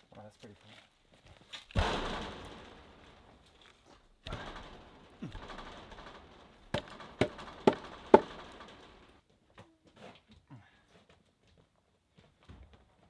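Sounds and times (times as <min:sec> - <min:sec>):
sharp knocks: 0:01.8 - 0:03.5, 0:04.2 - 0:09.1.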